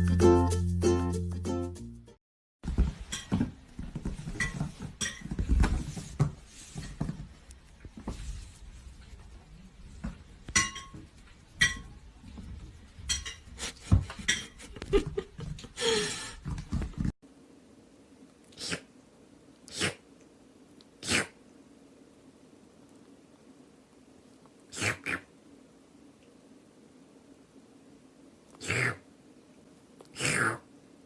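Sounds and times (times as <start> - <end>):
dishes clinking and knocking: 2.8 - 3.6, 4.3 - 5.5, 10.5 - 11.9, 13.0 - 14.6.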